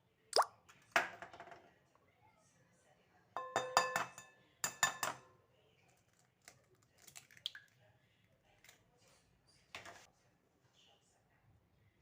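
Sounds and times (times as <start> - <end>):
glass clinking: 3.4 - 5.2
kitchenware tapping and clicking: 3.4 - 5.3.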